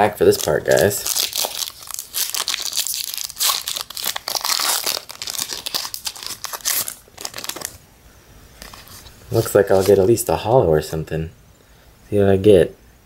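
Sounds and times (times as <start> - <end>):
foil wrapper crinkling and tearing: 0.0 - 7.8, 8.6 - 10.1.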